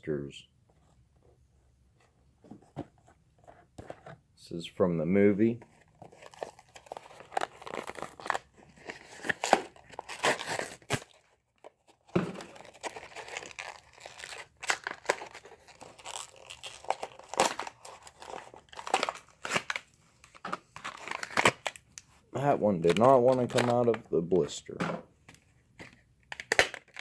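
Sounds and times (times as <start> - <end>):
cardboard tearing: 5.9 - 11.3.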